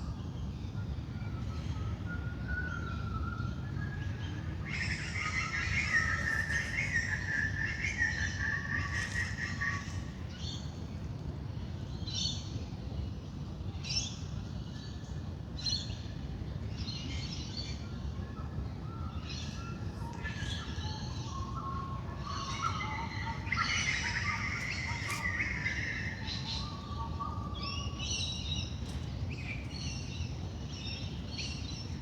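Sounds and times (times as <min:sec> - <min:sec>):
birds singing: 0:01.2 - 0:10.6, 0:17.0 - 0:32.0.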